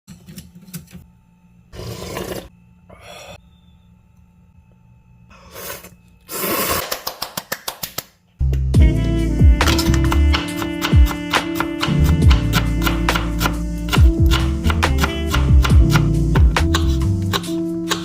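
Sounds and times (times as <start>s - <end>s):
knife chopping on cutting board: 9.6s - 18.0s.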